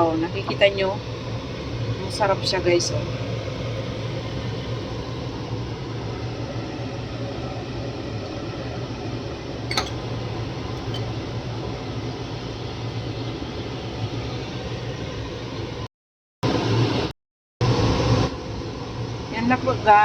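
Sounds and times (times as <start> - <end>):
fan-like mechanical hum: 0.0 - 15.9, 17.7 - 20.0
light clink: 9.7 - 10.0.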